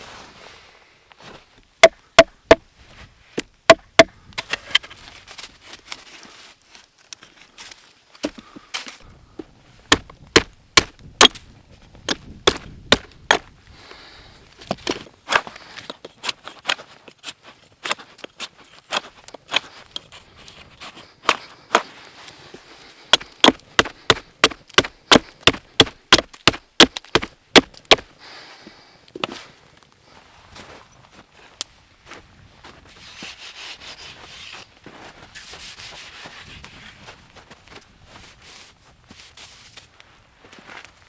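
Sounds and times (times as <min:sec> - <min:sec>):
wood being chopped: 0:01.8 - 0:02.6, 0:03.4 - 0:04.2, 0:09.4 - 0:13.5, 0:23.1 - 0:28.1.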